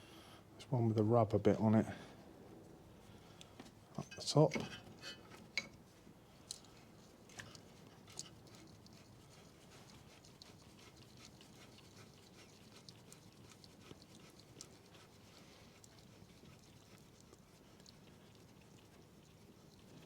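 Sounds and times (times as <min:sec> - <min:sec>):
faint metallic clicks and taps: 0:03.4 - 0:05.8, 0:06.4 - 0:09.0.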